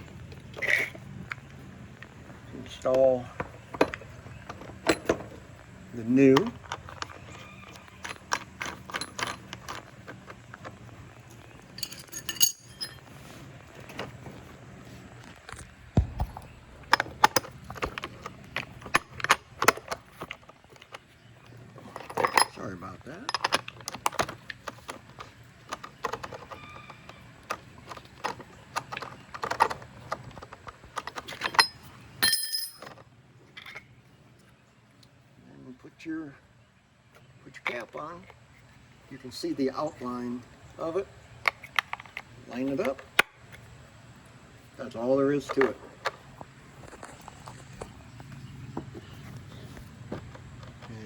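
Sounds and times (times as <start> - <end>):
small metal parts clinking: 6.3 - 13.1, 21.8 - 26.9, 27.5 - 33.9
ringing metal clink: 11.8 - 13.0, 31.4 - 32.9.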